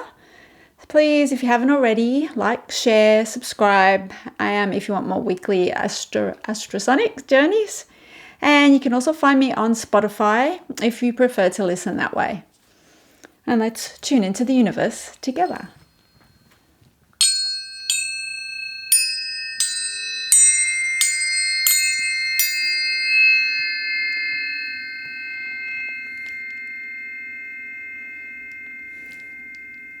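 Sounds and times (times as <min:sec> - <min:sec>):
struck bell-like metal tones: 0:15.2 - 0:30.0.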